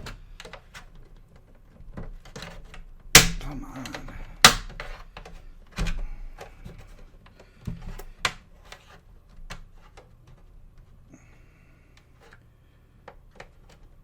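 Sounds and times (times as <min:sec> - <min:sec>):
plastic case clips snapping: 0:02.4 - 0:06.0.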